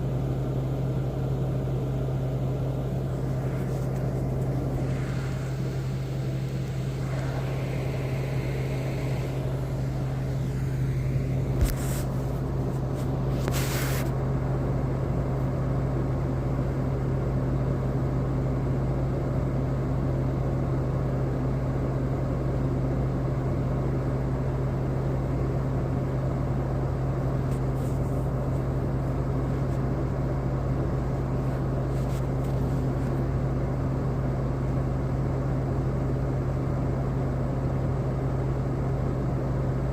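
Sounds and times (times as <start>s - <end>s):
motor droning: 2.9s - 13.6s
short hiss: 3.2s - 14.2s.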